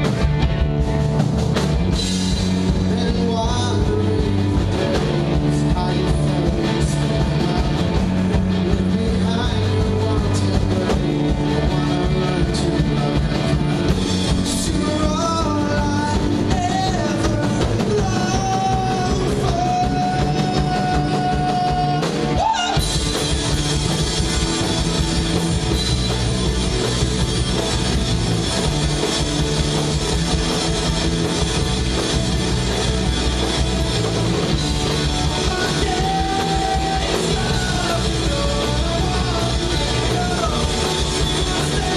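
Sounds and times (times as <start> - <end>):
live rock band playing: 0.0 - 41.9
person singing: 2.7 - 23.0, 34.4 - 41.9.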